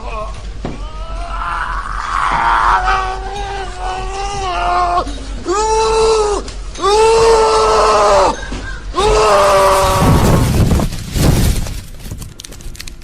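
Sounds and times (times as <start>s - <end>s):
long high wailing cries: 0.0s - 10.5s
rough noisy sound: 0.0s - 13.0s.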